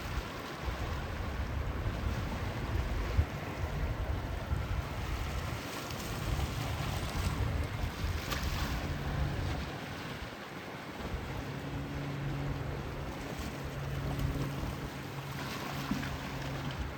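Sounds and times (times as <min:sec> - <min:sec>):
wind buffeting microphone: 0:00.0 - 0:10.4
distant jet engine rumble: 0:11.0 - 0:16.9.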